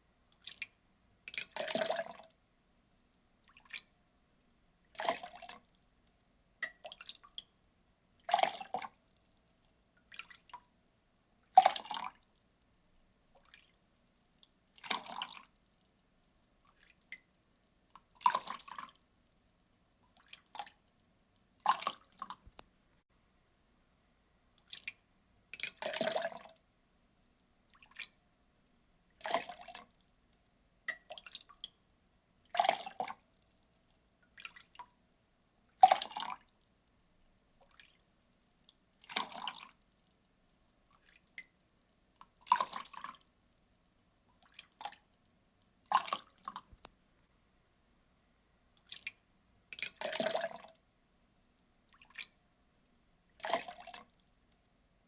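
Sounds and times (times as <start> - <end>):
water drips: 0.3 - 22.8, 24.6 - 47.0, 48.8 - 55.0
water pouring in splashes: 1.3 - 2.3, 4.9 - 5.7, 11.5 - 12.2, 14.8 - 15.5, 18.2 - 19.0, 25.5 - 26.6, 29.1 - 30.0, 35.8 - 36.5, 37.6 - 38.0, 39.0 - 39.8, 42.4 - 43.2, 49.7 - 50.8, 53.4 - 54.1.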